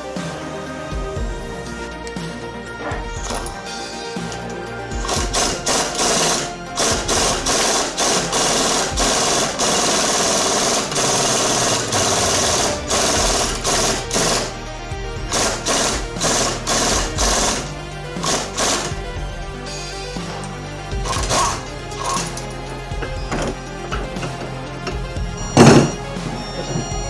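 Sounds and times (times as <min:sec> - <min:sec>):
background music: 0:00.0 - 0:27.0
power tool running in bursts: 0:04.1 - 0:14.6, 0:15.2 - 0:19.3.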